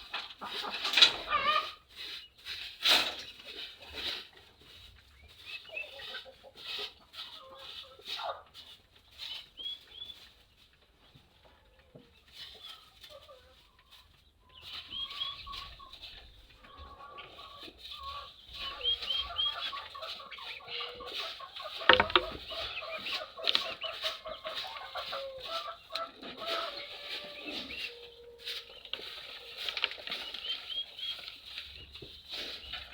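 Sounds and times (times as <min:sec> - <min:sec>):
chickens clucking: 0:00.0 - 0:32.9
chicks peeping: 0:03.3 - 0:10.7, 0:11.8 - 0:32.9
sharp knock: 0:21.9 - 0:22.4.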